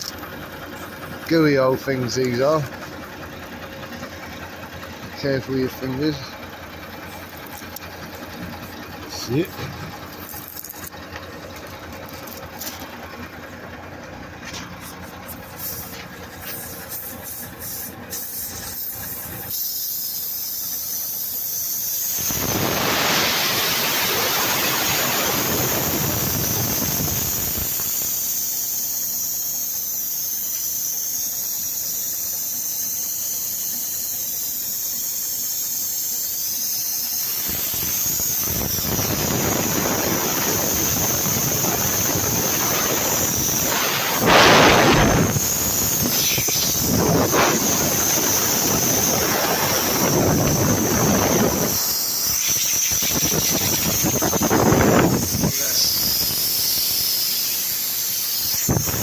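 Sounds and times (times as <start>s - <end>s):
compressed air hissing: 14.6s - 59.0s.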